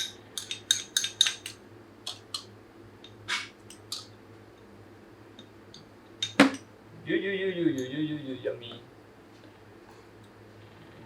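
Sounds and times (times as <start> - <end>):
utensils clinking against a dish: 0.0 - 2.5.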